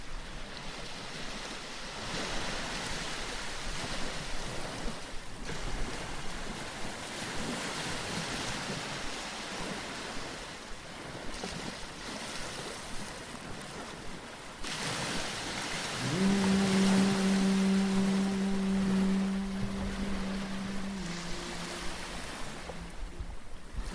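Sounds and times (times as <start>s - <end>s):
sea waves washing in: 0.0s - 23.9s
low steady tone sliding up: 16.0s - 23.9s.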